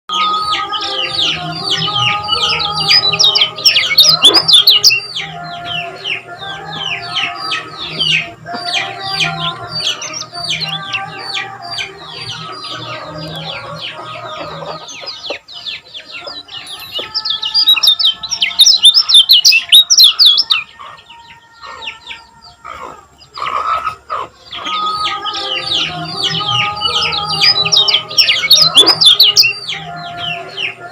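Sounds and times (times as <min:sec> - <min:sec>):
bird singing high falling chirps: 0:00.1 - 0:21.3, 0:24.5 - 0:30.4.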